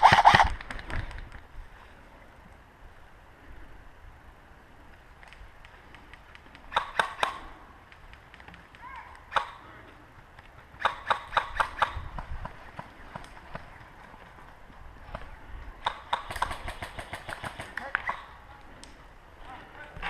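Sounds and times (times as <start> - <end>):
airsoft guns firing: 15.8 - 18.2.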